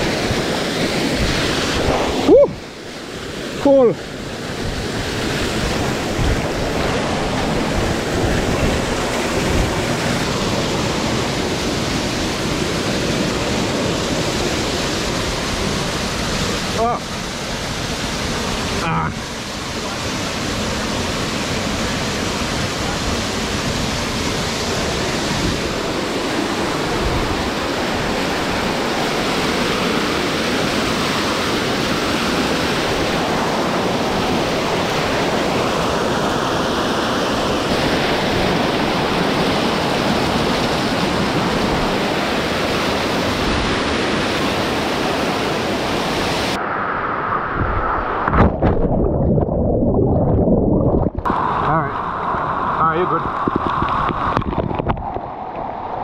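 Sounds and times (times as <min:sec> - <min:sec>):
waterfall rushing: 0:00.0 - 0:49.7, 0:50.8 - 0:54.4
wind buffeting microphone: 0:04.3 - 0:18.7, 0:46.1 - 0:56.0.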